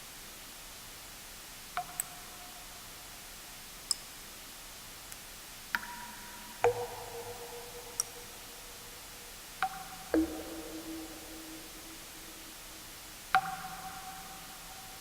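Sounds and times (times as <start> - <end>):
steady white-noise hiss: 0.0 - 15.0
water drips plinking: 1.8 - 2.3, 5.1 - 15.0.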